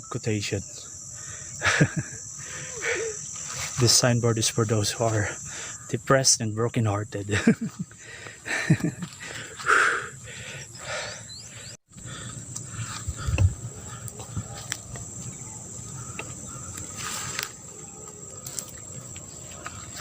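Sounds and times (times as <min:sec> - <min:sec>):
crickets chirping: 0:00.0 - 0:20.0
footsteps on a trail: 0:07.4 - 0:10.4, 0:12.0 - 0:20.0.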